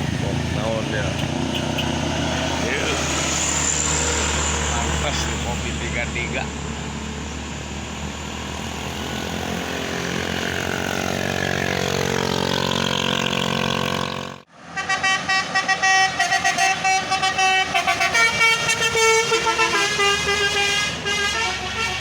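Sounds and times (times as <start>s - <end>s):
bus engine speeding up: 0.0s - 22.0s
multi-tone horn melody: 14.0s - 22.0s.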